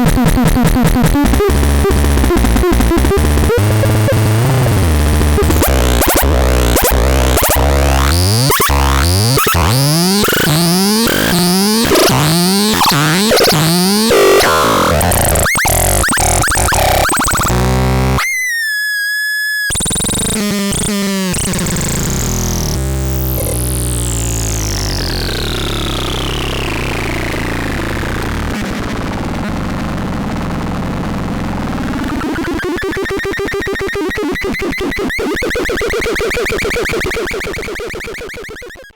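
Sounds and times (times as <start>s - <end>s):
synthesized rising pitch sweeps: 1.3s - 18.2s
steady electronic tone: 2.9s - 18.2s.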